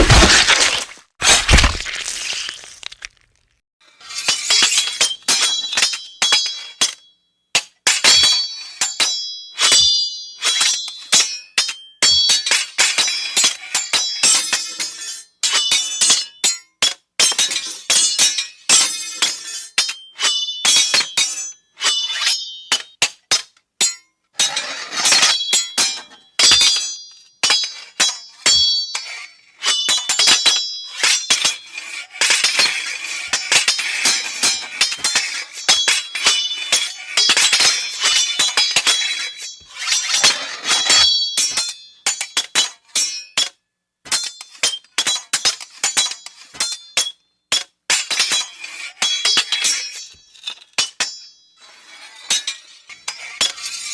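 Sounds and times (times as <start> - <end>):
glass clinking and shattering: 0.0 - 3.2.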